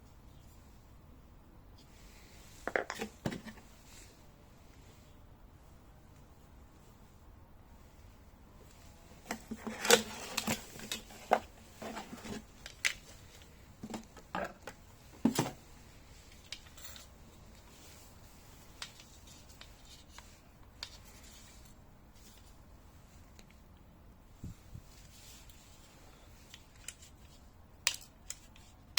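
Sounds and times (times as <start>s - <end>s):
packaging rustling: 9.3s - 14.1s.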